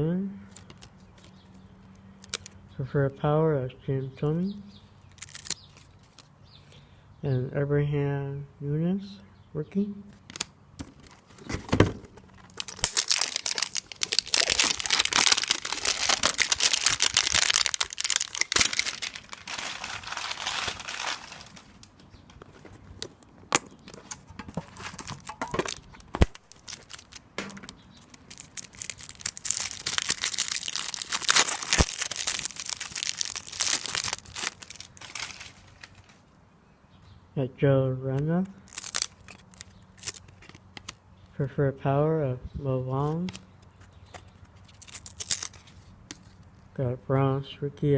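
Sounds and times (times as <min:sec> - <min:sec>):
wrapping crinkling and tearing: 0:05.1 - 0:06.3, 0:12.3 - 0:22.0, 0:24.1 - 0:36.3, 0:38.5 - 0:41.0, 0:44.6 - 0:46.4.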